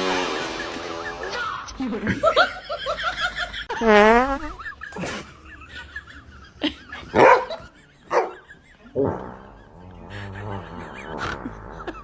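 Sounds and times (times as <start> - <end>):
dog barking: 7.1 - 8.4.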